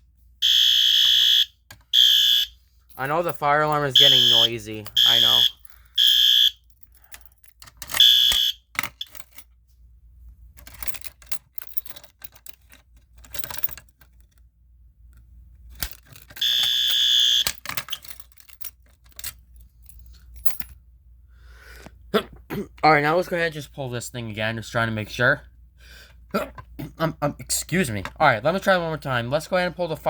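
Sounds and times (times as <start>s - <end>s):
fire alarm horn blasts: 0.4s - 2.7s, 4.0s - 6.6s, 8.0s - 8.7s, 16.4s - 17.5s.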